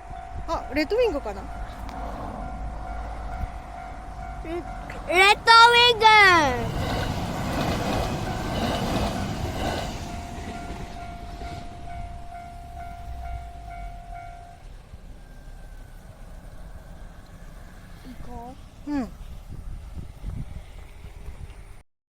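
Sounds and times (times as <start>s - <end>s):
level crossing alarm ringing: 0.0s - 15.6s
freight train rumbling past: 0.0s - 21.8s.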